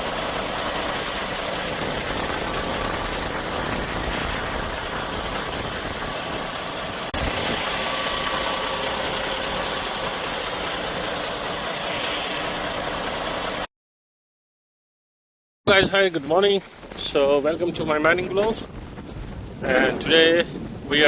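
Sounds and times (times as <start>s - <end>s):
road noise: 0.0s - 13.7s
truck engine running: 0.0s - 13.7s.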